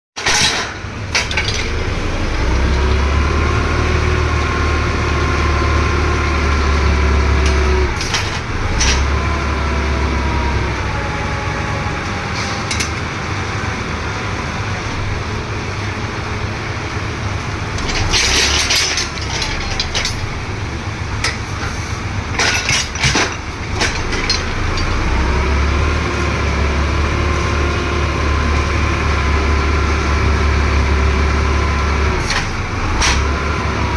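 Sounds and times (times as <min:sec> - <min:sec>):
sharp metal knocks and clanks: 0:00.2 - 0:02.1, 0:17.8 - 0:20.5, 0:21.2 - 0:25.2
drilling machine engine under load: 0:00.2 - 0:33.9.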